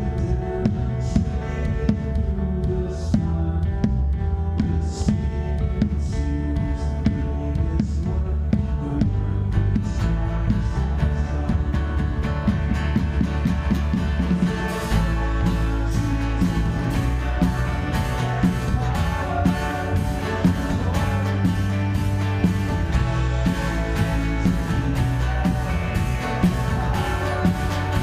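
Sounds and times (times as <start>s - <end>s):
guitar: 0.0s - 28.0s
steady drum beat: 0.0s - 28.0s
sustained bass notes: 0.0s - 28.0s
worship band playing: 10.0s - 28.0s.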